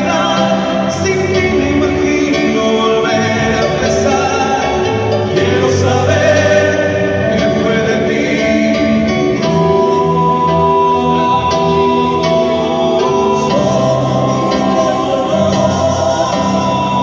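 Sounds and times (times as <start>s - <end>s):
live band music: 0.0s - 17.0s
voices singing together: 0.0s - 17.0s.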